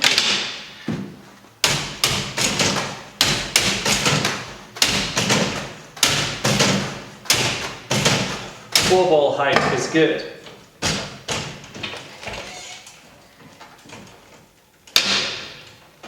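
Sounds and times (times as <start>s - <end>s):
juggling balls thudding on machine: 0.0s - 10.0s, 10.8s - 12.0s, 14.9s - 16.0s.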